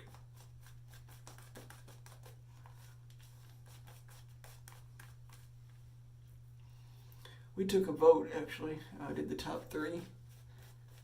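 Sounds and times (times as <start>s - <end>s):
shaving brush scratching: 0.0s - 5.5s, 9.1s - 11.0s
electrical hum: 2.2s - 11.0s.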